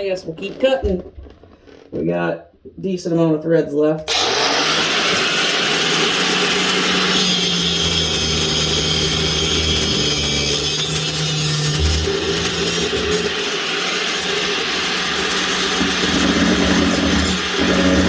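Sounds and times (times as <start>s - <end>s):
angle grinder cutting pipe: 4.1s - 18.0s.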